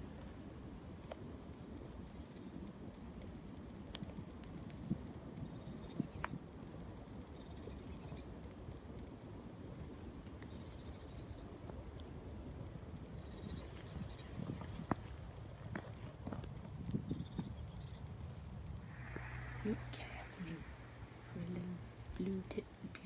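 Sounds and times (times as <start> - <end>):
small birds chirping: 0.0 - 2.7, 3.3 - 23.0.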